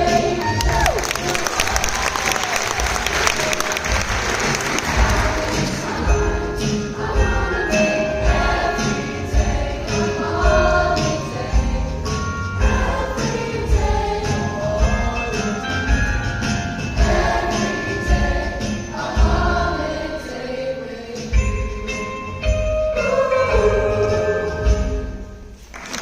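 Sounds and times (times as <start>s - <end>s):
choir singing: 0.0s - 0.7s, 3.2s - 16.0s, 16.9s - 25.2s
jingle bells shaken: 1.1s - 19.6s
steady beat: 1.6s - 19.6s.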